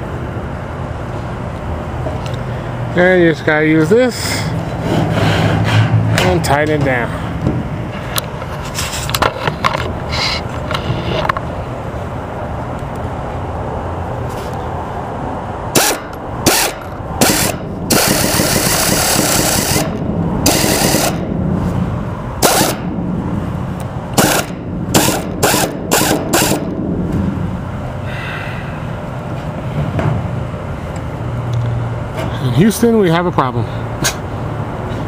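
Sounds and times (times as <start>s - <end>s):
power driver tightening bolts: 15.8s - 21.2s, 22.4s - 22.8s, 24.2s - 26.7s.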